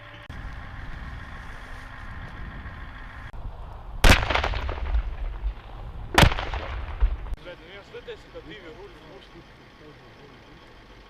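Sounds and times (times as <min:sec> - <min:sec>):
steady low rumble: 0:00.2 - 0:09.0
loud gunshots with echo: 0:04.0 - 0:07.4.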